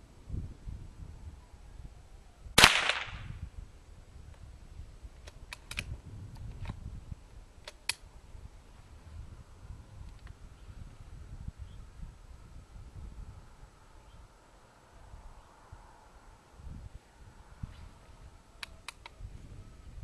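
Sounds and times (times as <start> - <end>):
rifle shot: 2.6 - 3.4
rifle lever metallic clicks: 5.2 - 6.8, 7.6 - 8.0.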